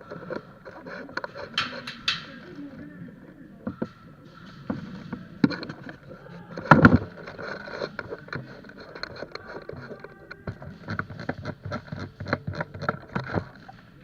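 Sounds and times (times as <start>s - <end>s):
sharp knocks: 1.5s - 2.6s.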